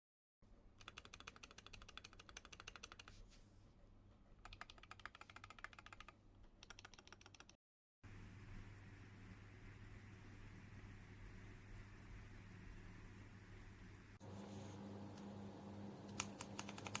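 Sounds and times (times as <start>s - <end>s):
mechanical keyboard typing: 0.8s - 3.1s, 4.4s - 7.6s, 16.0s - 17.0s
low hum and hiss: 8.1s - 17.0s.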